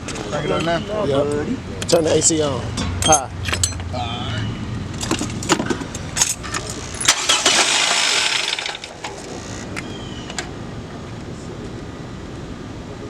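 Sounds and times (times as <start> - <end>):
car engine cranking and idling: 0.0 - 10.1.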